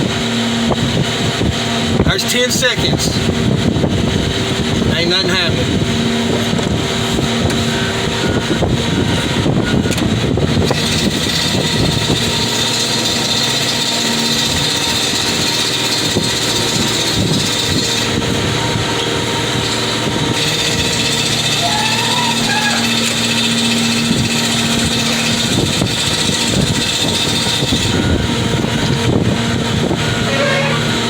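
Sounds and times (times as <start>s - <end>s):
car crusher engine running: 6.4s - 31.0s.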